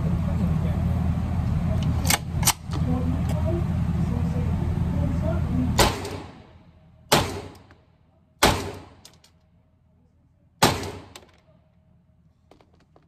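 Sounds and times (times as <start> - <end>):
gunshots: 5.8 - 7.7, 8.4 - 9.1, 10.6 - 11.4.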